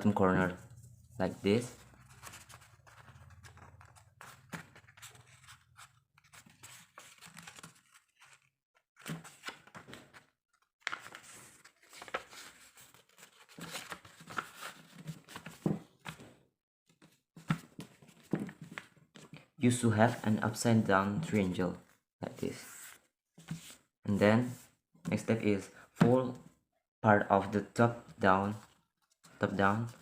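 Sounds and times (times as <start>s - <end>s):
paper being folded and creased: 1.8s - 16.2s.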